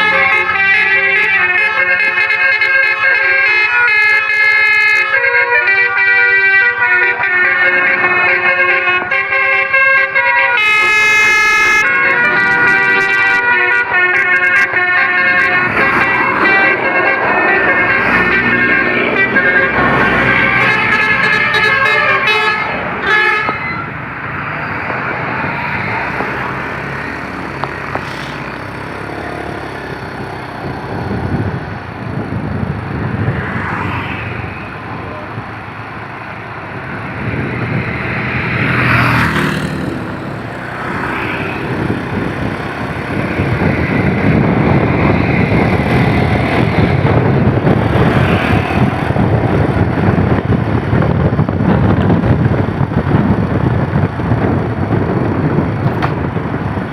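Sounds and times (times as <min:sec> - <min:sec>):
multi-tone horn: 0:00.0 - 0:24.0
vehicles passing on road: 0:00.0 - 0:56.9.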